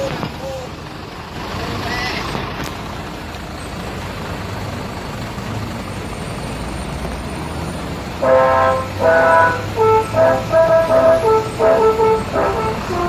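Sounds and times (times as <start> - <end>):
bus engine running: 0.0 - 13.0
road rumble: 0.0 - 13.0
multi-tone horn melody: 8.2 - 13.0.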